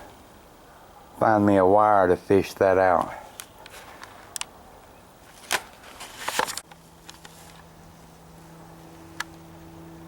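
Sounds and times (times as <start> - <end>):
steady low hum: 6.7 - 10.0.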